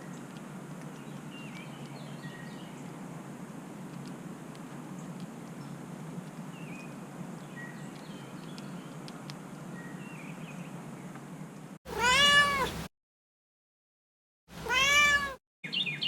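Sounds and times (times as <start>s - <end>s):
outdoor background noise: 0.0s - 12.9s, 14.5s - 16.0s
cat meowing: 11.9s - 12.8s, 14.6s - 15.4s.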